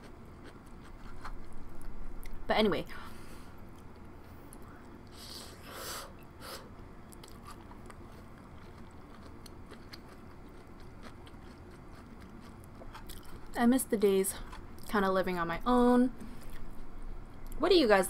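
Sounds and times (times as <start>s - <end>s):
person chewing food: 0.0s - 2.4s, 7.1s - 13.5s.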